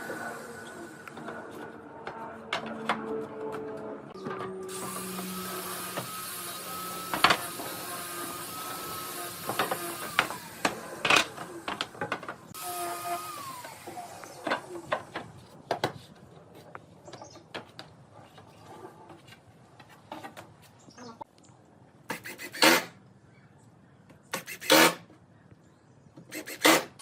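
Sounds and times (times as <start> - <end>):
power tool whining: 3.0 - 15.2.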